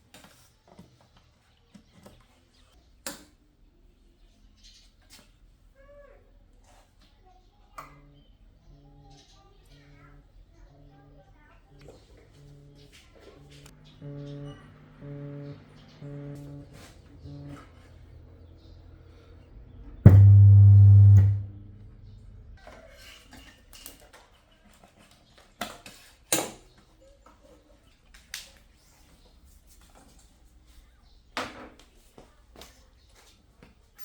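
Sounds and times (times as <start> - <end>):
loud low speaker hum: 14.0 - 17.6, 20.0 - 22.6.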